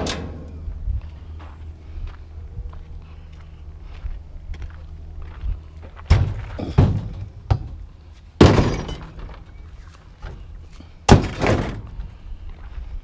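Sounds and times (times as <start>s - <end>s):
metal grill parts clattering: 0.0s - 0.6s, 8.4s - 9.4s.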